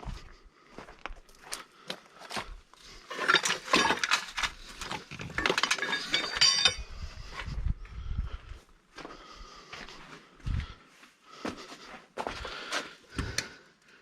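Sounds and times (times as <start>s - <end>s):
hard items clattering and clinking: 2.9s - 7.0s.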